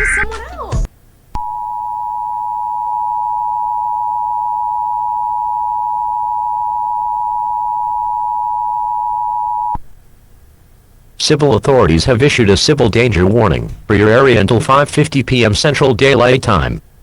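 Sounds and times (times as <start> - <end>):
harsh two-tone alarm: 1.4 - 9.8.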